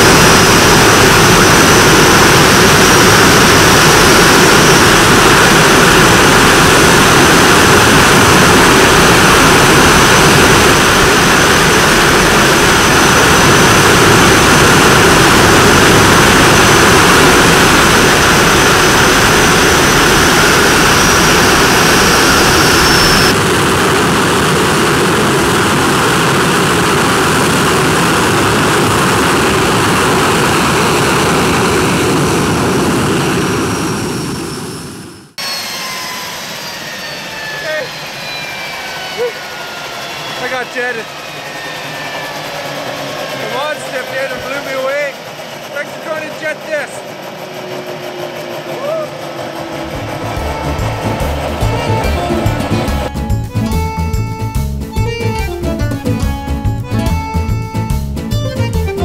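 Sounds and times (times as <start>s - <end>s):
thin high whine: 0.0s - 24.2s, 33.6s - 46.0s, 46.6s - 54.5s
jet engine roaring at idle: 0.0s - 59.0s.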